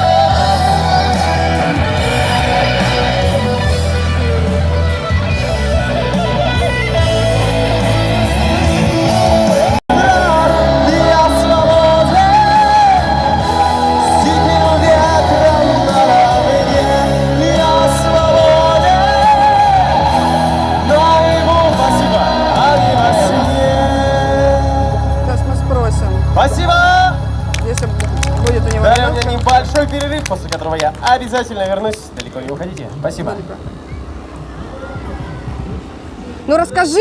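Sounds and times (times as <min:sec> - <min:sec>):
person singing: 0:00.0 - 0:04.0, 0:09.6 - 0:25.3
guitar and bass: 0:00.0 - 0:37.0.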